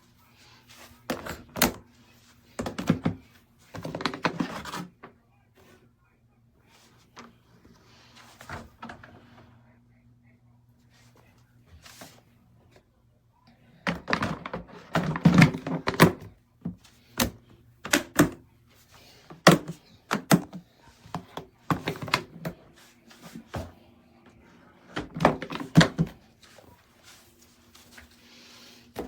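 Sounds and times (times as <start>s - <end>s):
plastic litter box clattering: 2.5s - 4.9s, 13.9s - 18.4s, 19.3s - 22.6s, 24.9s - 26.7s.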